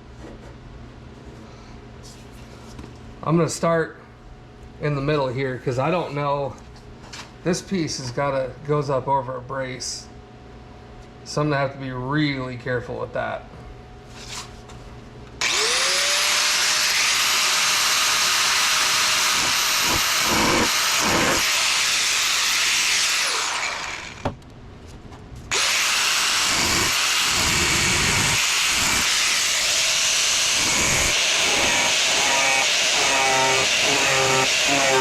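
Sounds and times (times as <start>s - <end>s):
cutoff wheel cutting sheet metal: 15.4s - 24.2s, 25.5s - 35.0s.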